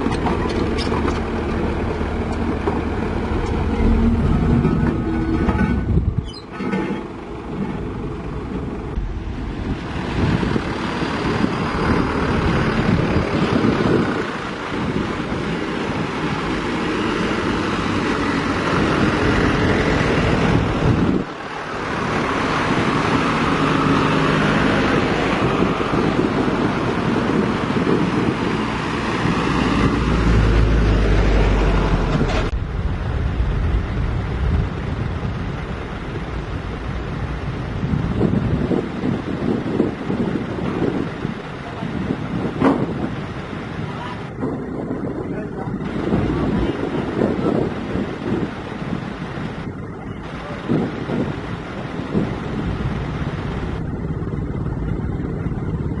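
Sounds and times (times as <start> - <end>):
heavy diesel machinery running: 0.0 - 56.0
wind buffeting microphone: 0.0 - 56.0.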